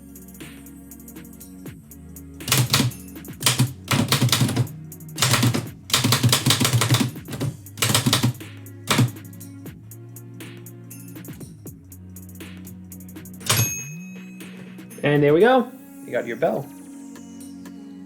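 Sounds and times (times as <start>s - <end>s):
lo-fi instrumental music: 0.0s - 18.0s
typewriter keystrokes: 2.5s - 9.3s, 13.4s - 13.8s.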